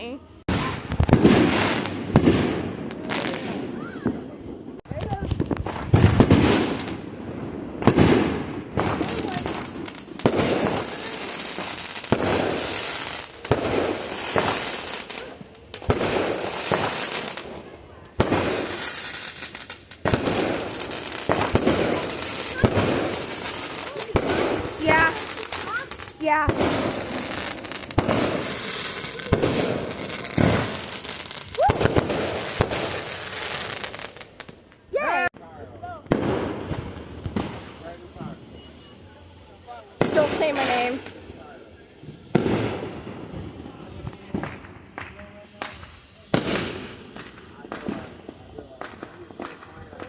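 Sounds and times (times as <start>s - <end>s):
firework crackle and hiss: 0.0s - 50.0s
firework bangs: 0.4s - 34.9s, 35.8s - 50.0s.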